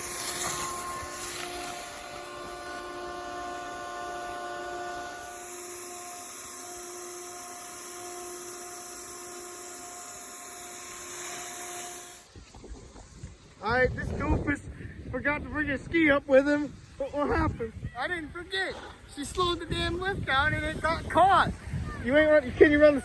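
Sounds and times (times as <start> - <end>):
machine hum with whining tones: 0.0 - 12.6.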